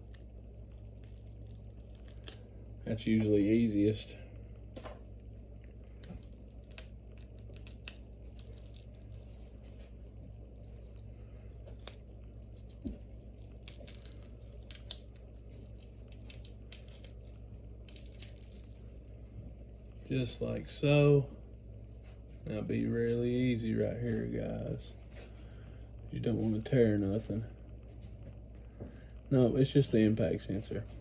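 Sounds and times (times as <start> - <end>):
adhesive tearing and scratching: 0.0 - 2.4, 5.6 - 19.1
steady low hum: 0.0 - 31.0.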